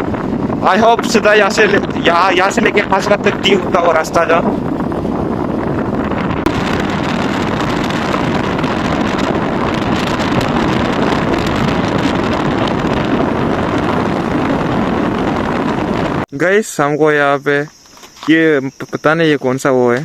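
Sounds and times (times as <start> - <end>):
vehicle driving on road: 0.0 - 0.7, 2.8 - 16.2
wind on microphone: 0.0 - 16.3.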